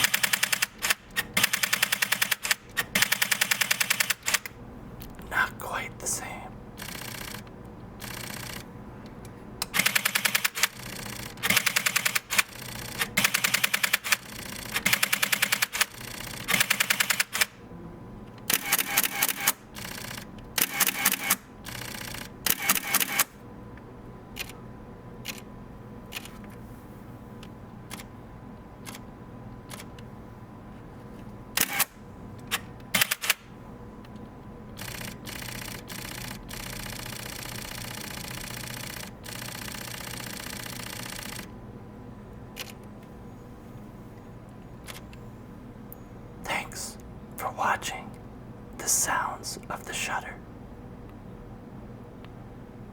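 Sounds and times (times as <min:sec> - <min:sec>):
camera shutter bursts: 0:00.0 - 0:04.5, 0:09.8 - 0:17.5, 0:18.5 - 0:23.3, 0:31.6 - 0:32.0, 0:33.0 - 0:33.4, 0:34.8 - 0:41.5
single camera shutter clicks: 0:31.6 - 0:32.0, 0:33.0 - 0:33.4.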